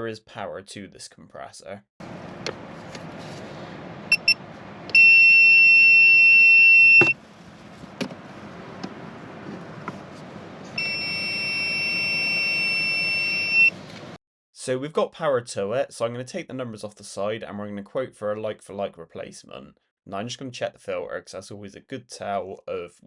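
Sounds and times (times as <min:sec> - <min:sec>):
electrical tester beeping: 0:04.1 - 0:07.2, 0:10.8 - 0:13.8.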